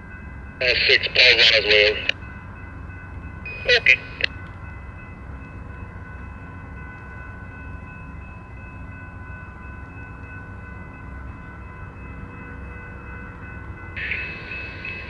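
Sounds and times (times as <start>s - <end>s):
diesel locomotive idling: 0.6s - 2.2s, 3.2s - 4.5s, 13.0s - 15.0s.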